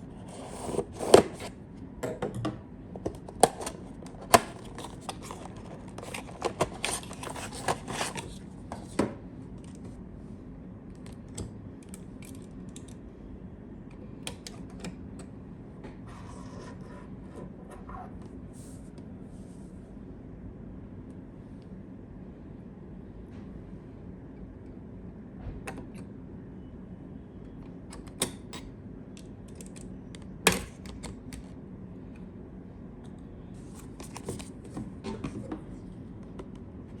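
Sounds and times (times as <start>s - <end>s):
handling computer parts: 0.2s - 9.9s, 33.6s - 36.6s
packaging rustling: 4.2s - 8.4s.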